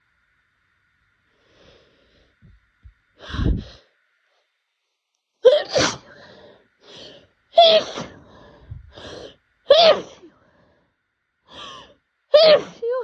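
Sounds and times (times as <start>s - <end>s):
faint breaths: 1.3s - 2.6s, 8.1s - 9.5s, 10.2s - 12.0s
person sneezing: 5.5s - 6.1s, 7.6s - 8.2s.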